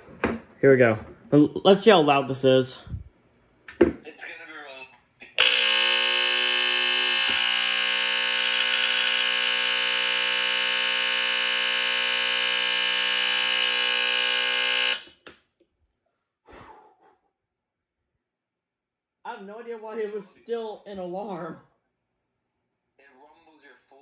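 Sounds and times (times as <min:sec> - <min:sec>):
smoke alarm buzzing: 0:05.4 - 0:15.2.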